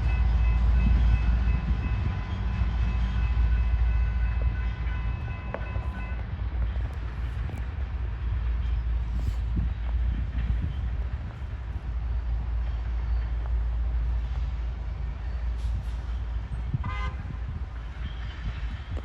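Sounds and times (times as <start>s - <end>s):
steady low rumble: 0.0s - 19.0s
distant locomotive air horn blast: 16.7s - 19.0s.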